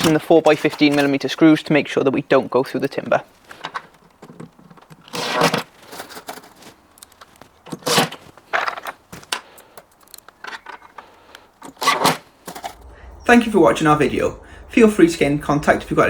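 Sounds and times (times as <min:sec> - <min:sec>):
parts and screws scraping: 0:00.0 - 0:12.8
small clicks: 0:02.7 - 0:12.8.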